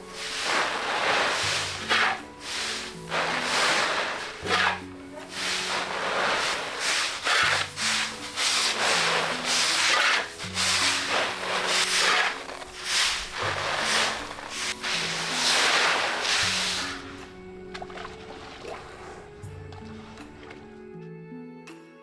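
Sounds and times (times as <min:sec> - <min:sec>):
rasping swishing strokes: 0:00.0 - 0:17.2
soft background music: 0:00.0 - 0:22.0.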